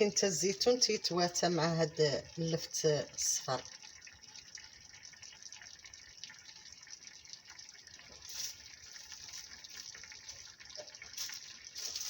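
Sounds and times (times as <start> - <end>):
watery hiss: 8.2 - 8.7.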